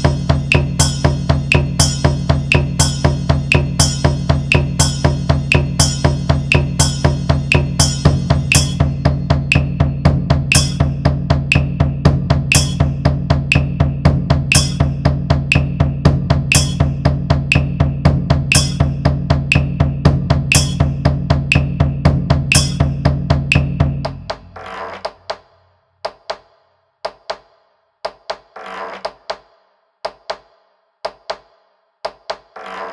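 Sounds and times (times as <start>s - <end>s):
sharp bright drum accent: 0.0s - 24.6s
fast drumming on large drums: 0.0s - 25.2s.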